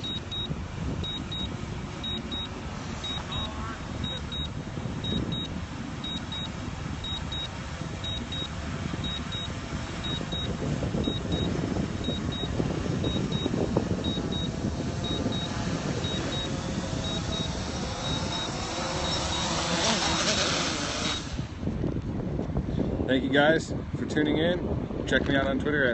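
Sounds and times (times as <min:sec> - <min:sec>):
short high warning beeps: 0:00.0 - 0:19.5
wind on microphone: 0:00.0 - 0:25.9.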